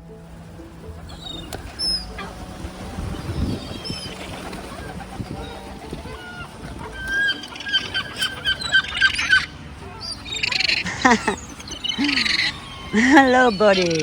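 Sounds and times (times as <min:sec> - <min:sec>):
gull calling: 0:01.1 - 0:14.0.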